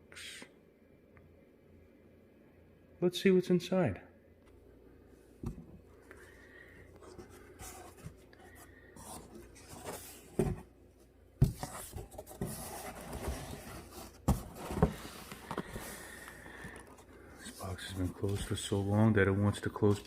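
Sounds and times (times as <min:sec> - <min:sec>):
cardboard flaps rustling: 0:09.0 - 0:18.8.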